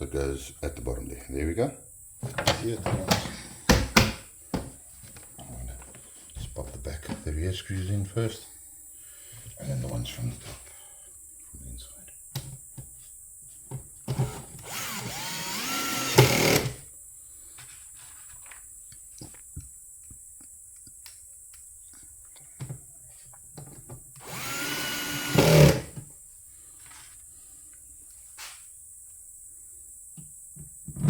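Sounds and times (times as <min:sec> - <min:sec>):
cordless drill driving screws: 0:14.1 - 0:16.8, 0:24.2 - 0:26.0.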